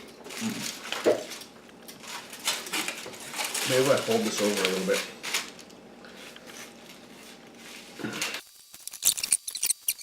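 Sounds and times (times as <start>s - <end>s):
sharp clicks and crackles: 8.6s - 10.0s.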